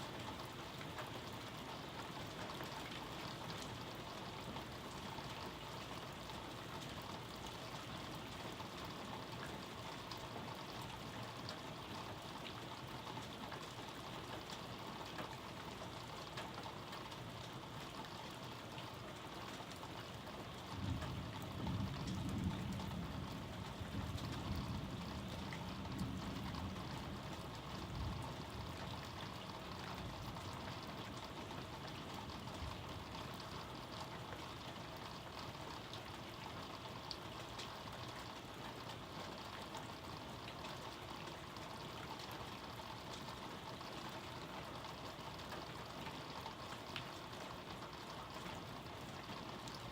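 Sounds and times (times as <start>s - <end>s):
steady rain falling: 0.0s - 49.9s
low rumble of thunder: 20.6s - 30.8s.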